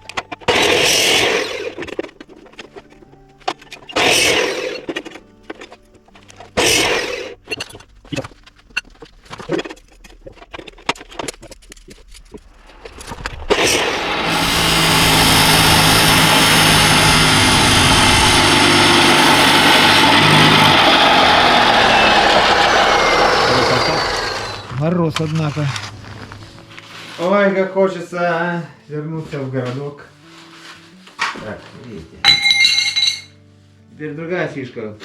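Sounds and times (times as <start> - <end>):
angle grinder cutting steel: 0.4 - 2.0, 3.7 - 5.2, 6.6 - 7.6, 12.6 - 24.9.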